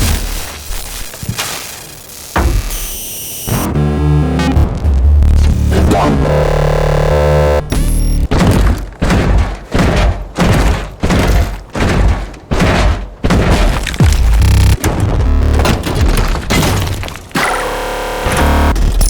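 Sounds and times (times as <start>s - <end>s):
buzzing mechanical whir: 2.2s - 8.3s, 14.1s - 15.8s, 17.4s - 19.0s
heavy booming thuds: 7.5s - 17.0s.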